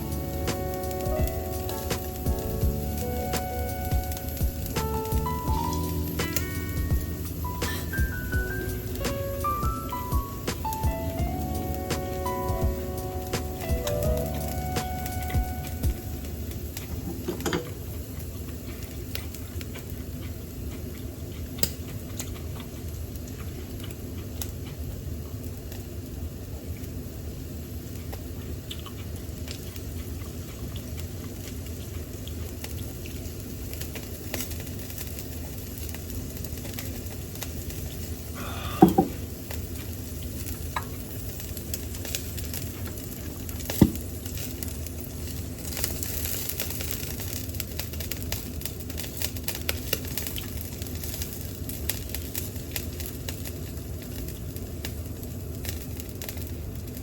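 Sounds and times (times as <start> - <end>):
steady low background noise: 0.0 - 19.2
skewers sizzling on a grill: 0.0 - 57.0
fat popping: 38.4 - 39.3.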